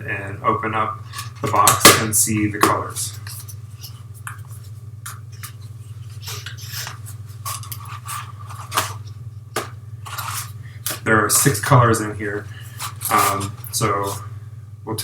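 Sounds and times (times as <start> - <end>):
steady low hum: 0.0 - 15.0
packaging scrapes and rustles: 5.5 - 11.6, 12.5 - 14.3.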